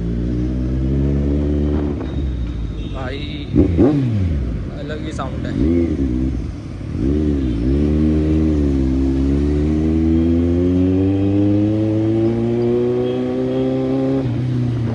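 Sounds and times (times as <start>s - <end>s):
motorcycle engine revving: 0.0s - 14.9s.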